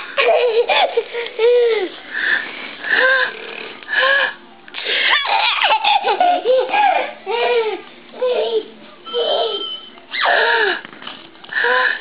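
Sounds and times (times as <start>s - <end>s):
baby laughing and squealing: 5.1s - 10.6s.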